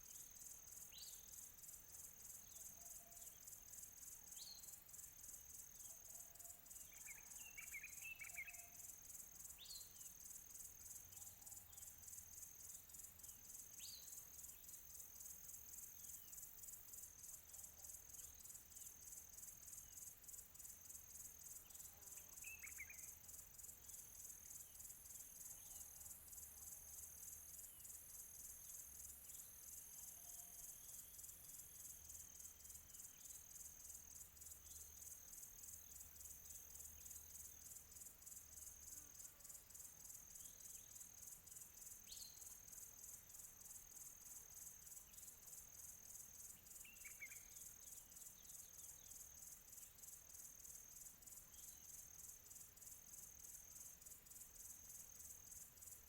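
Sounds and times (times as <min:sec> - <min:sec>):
high-pitched insect trill: 0:00.0 - 0:56.0
bird chirps: 0:46.8 - 0:47.6.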